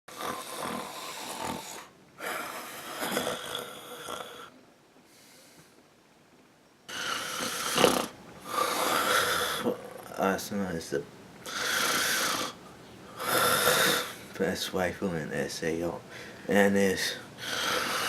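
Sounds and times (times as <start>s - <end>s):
person snoring: 0.1s - 4.5s, 6.9s - 10.2s, 11.4s - 12.6s, 13.2s - 14.3s, 17.4s - 18.0s.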